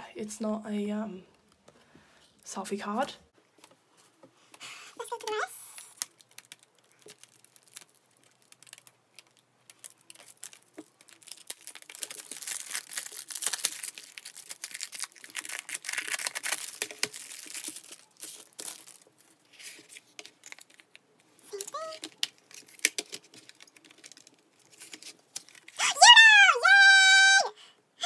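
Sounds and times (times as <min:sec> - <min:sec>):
plastic wrapping crinkling and tearing: 0:05.0 - 0:27.2
packaging clicks and taps: 0:19.8 - 0:25.7.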